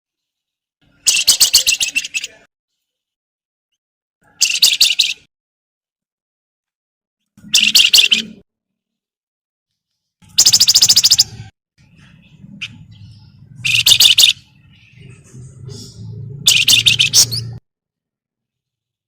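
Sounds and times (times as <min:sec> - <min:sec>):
bird chattering call: 0:07.4 - 0:08.4, 0:10.3 - 0:11.5, 0:12.6 - 0:17.6.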